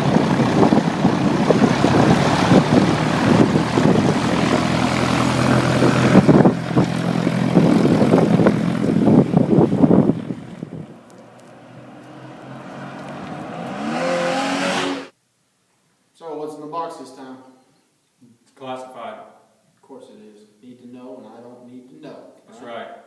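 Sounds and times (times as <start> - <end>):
vehicle engine running: 0.0 - 15.1
rising tone: 0.1 - 15.1.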